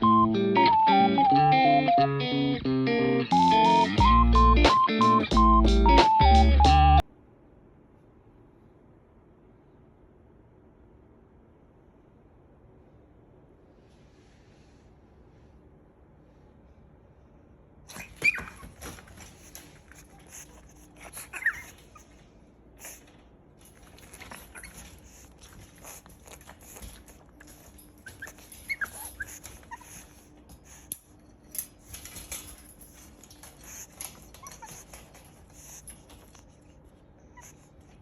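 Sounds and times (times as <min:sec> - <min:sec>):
high squeaks: 0:17.9 - 0:22.0, 0:23.7 - 0:29.9
puppy sneezing and snorting: 0:17.9 - 0:22.2, 0:22.8 - 0:30.9.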